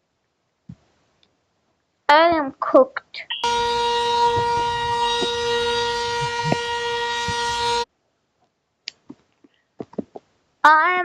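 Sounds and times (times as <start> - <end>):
emergency alert alarm tone: 3.4 - 7.9.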